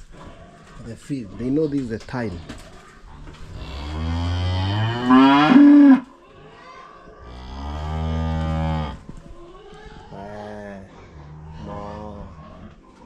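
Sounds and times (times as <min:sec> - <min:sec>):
cows mooing: 0:03.5 - 0:06.1.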